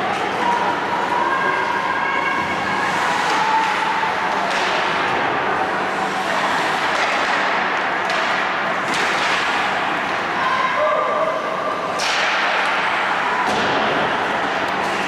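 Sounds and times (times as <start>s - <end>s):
hockey sticks and puck knocking: 3.1s - 10.3s, 11.9s - 15.0s.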